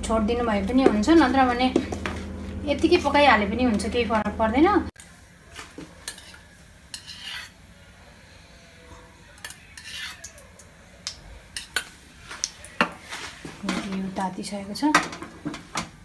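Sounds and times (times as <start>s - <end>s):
spoon stirring thick batter: 5.6s - 7.6s, 9.1s - 10.5s.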